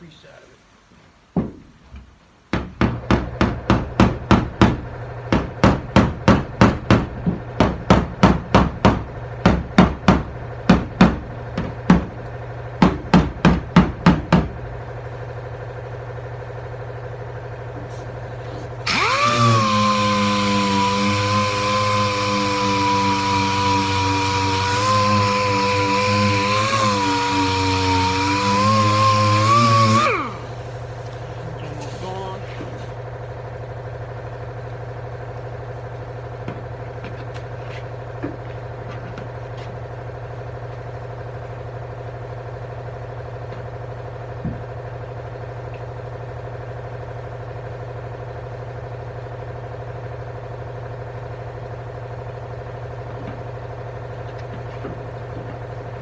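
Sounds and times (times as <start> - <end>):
power tool whining: 16.8 - 33.1
steady low hum: 30.1 - 41.4.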